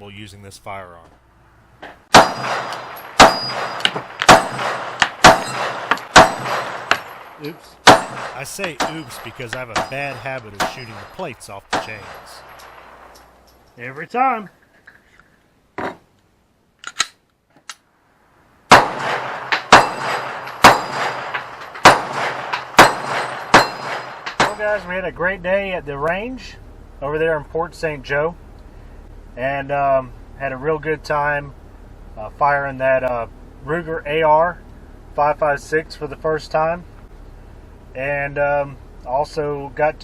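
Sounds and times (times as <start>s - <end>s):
gunshots: 2.1s - 13.2s, 18.7s - 24.9s
pistol shots: 2.1s - 13.3s, 18.7s - 24.8s
steel plates clanging: 2.2s - 13.8s, 19.3s - 24.9s.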